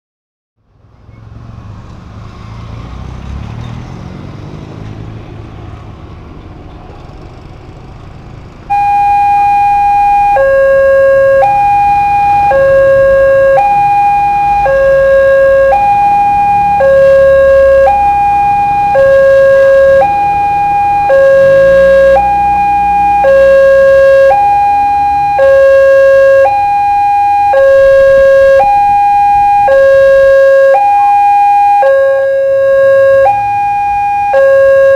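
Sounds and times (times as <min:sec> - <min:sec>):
road traffic rumbling: 0:00.6 - 0:34.9
two-tone level crossing alarm: 0:08.7 - 0:34.9.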